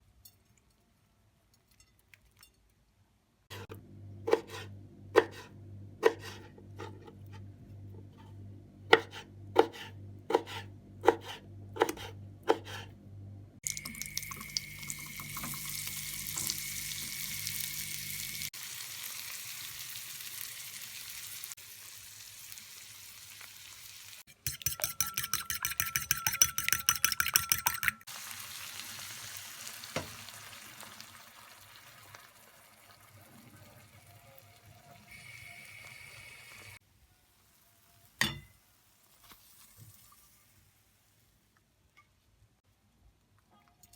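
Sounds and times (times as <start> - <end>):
food sizzling in pan: 13.6 - 24.3, 28.0 - 41.2
rapid stirring clicks: 24.3 - 28.1
utensil tapping on pan: 24.5 - 28.0.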